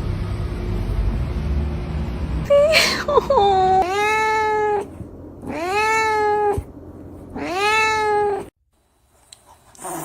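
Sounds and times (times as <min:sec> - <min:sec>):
cat meowing: 0:03.8 - 0:06.7, 0:07.3 - 0:08.5.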